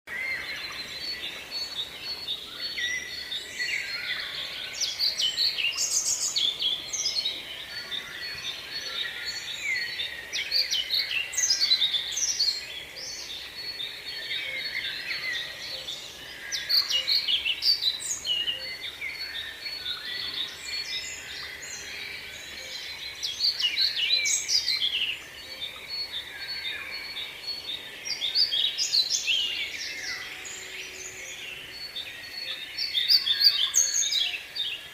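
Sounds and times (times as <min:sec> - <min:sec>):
songbirds singing and chirping: 0:00.1 - 0:34.9.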